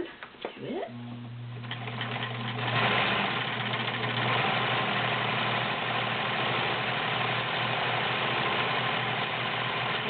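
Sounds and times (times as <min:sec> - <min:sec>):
sewing machine running: 0:00.9 - 0:10.0.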